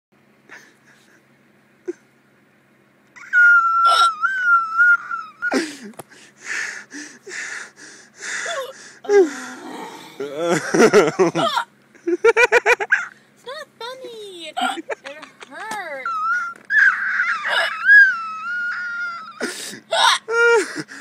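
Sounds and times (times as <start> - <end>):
person laughing squeakily: 3.2 - 5.7, 10.2 - 11.7, 14.6 - 20.8.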